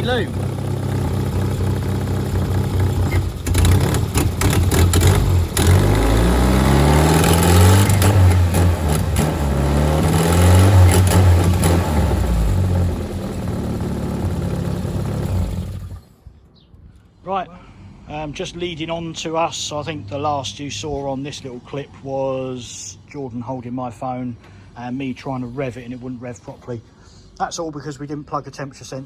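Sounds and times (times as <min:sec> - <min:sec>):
car engine revving and idling: 0:00.0 - 0:16.0.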